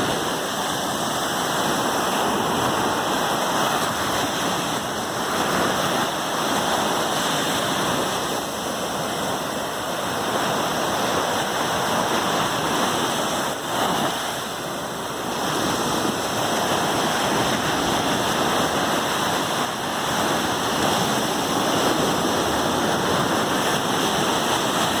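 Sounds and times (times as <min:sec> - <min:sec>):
sea waves rushing: 0:00.0 - 0:25.0.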